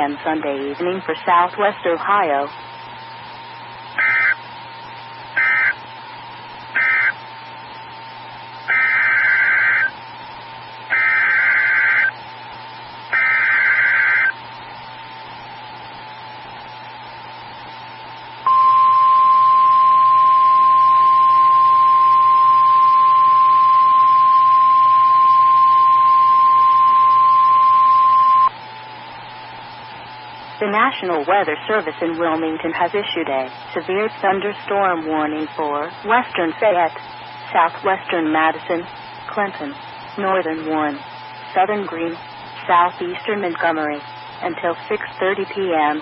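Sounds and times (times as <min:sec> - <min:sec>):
data tone bursts: 0:04.0 - 0:04.4, 0:05.4 - 0:05.8, 0:06.8 - 0:07.2, 0:08.7 - 0:09.9, 0:10.9 - 0:12.1, 0:13.2 - 0:14.4, 0:18.5 - 0:28.5.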